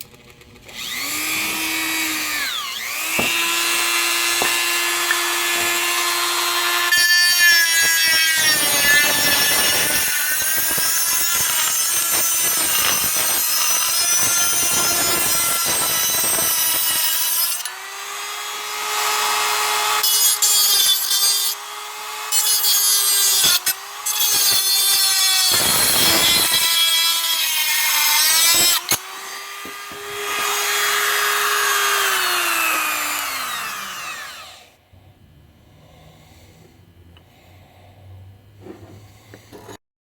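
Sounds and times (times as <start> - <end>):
air die grinder whining: 0.0 - 20.1, 20.9 - 34.7
gritty grinding on workpiece: 0.7 - 17.8, 22.3 - 34.5, 38.6 - 39.8.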